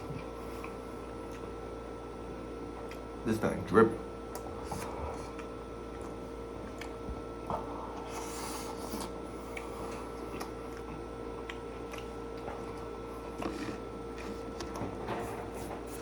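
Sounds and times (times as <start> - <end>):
chewing sandwich: 0.0 - 3.2, 4.2 - 16.0
electrical hum: 0.0 - 16.0.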